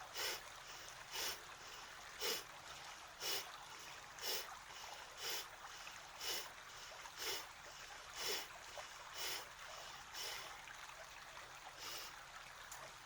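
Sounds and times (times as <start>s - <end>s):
quiet inhales: 0.0s - 2.5s, 3.2s - 10.5s, 11.8s - 12.2s
faint steady hiss: 0.0s - 13.0s.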